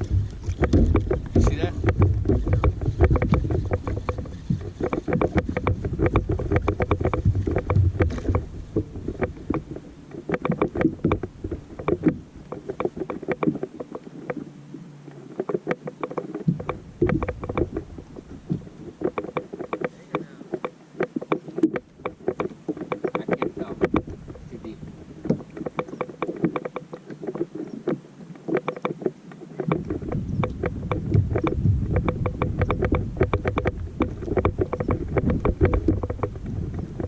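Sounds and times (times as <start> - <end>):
waves lapping against boat hull: 0.0 - 37.0
wind rumbling on microphone: 0.0 - 37.0.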